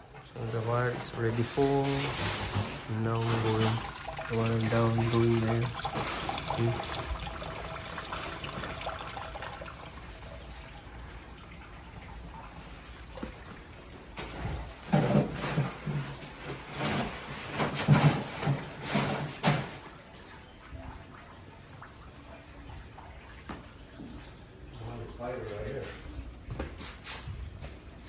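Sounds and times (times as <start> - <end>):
water trickling through pipes: 0.0 - 28.0
water gurgling: 2.7 - 14.2.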